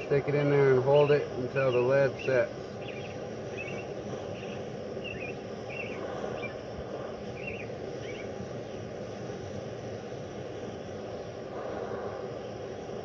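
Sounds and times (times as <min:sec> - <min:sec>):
small bird chirping: 0:00.9 - 0:06.6, 0:07.3 - 0:08.8.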